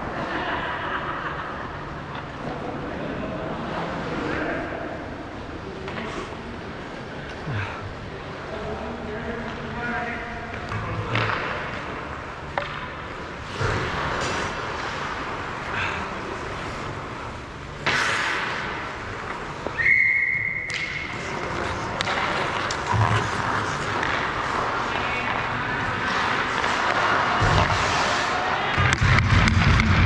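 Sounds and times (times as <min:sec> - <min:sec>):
stick and puck clacks: 0:10.5 - 0:14.6, 0:20.6 - 0:30.0
skate blades scraping ice: 0:13.4 - 0:19.7, 0:21.1 - 0:28.7
referee's whistle: 0:19.8 - 0:21.0.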